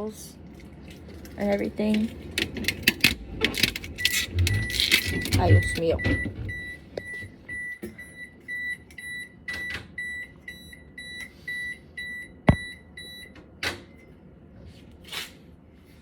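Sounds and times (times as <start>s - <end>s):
refrigerator alarm beeping: 3.5s - 14.2s.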